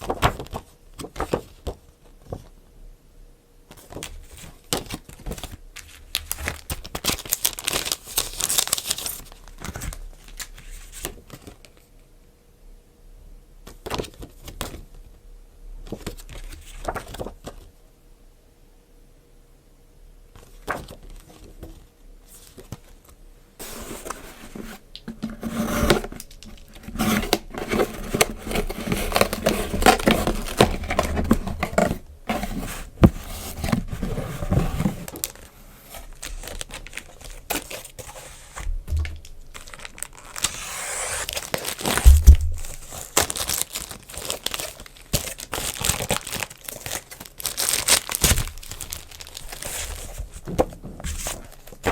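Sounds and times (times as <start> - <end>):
plastic and paper crinkling: 0.0 - 2.5, 3.8 - 11.8, 15.9 - 17.7, 22.4 - 51.9.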